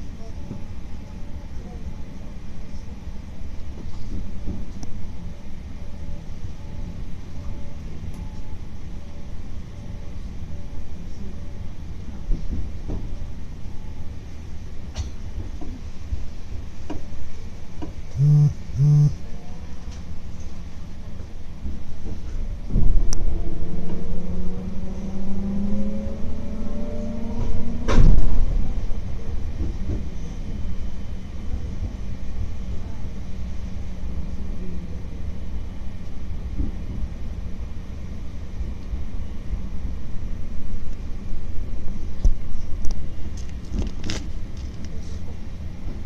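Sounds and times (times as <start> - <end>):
electric train rumbling: 0.0 - 46.0
rising whine: 18.2 - 19.2.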